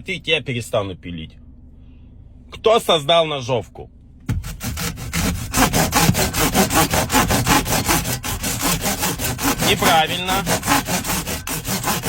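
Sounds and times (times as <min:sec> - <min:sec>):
handsaw sawing: 0:04.3 - 0:12.0.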